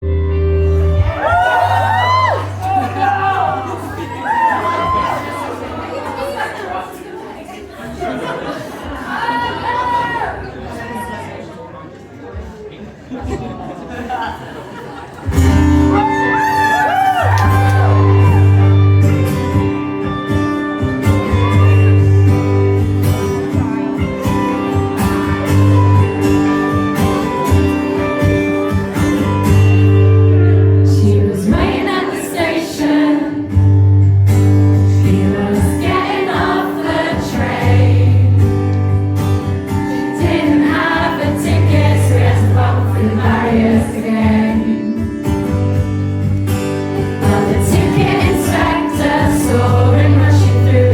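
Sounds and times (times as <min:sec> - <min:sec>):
low bass notes: 0:17.4 - 0:31.7
live band music: 0:17.4 - 0:50.9
wavering singing voices: 0:31.0 - 0:33.5, 0:34.9 - 0:38.4, 0:40.1 - 0:45.1, 0:47.2 - 0:50.9.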